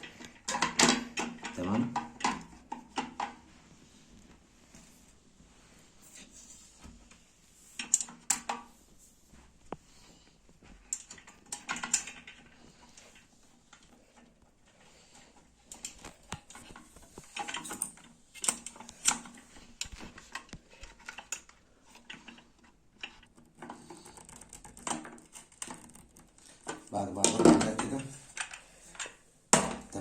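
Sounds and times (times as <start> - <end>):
clicks and taps of small parts: 10.8 - 12.5, 15.7 - 29.8.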